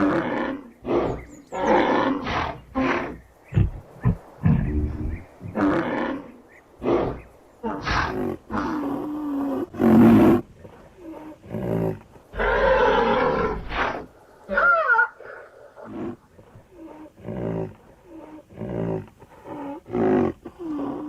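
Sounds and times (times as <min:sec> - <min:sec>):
rhinoceros calls: 0:14.5 - 0:17.2.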